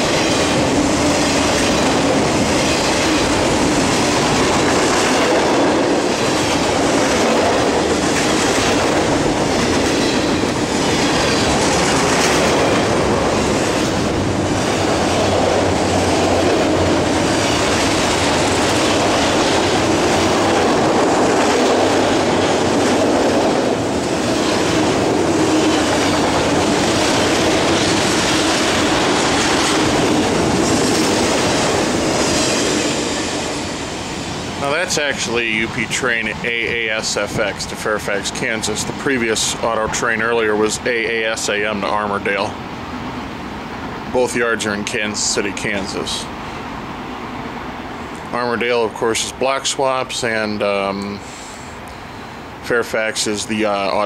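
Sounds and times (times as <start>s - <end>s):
freight train wheels clattering: 0.0s - 43.2s.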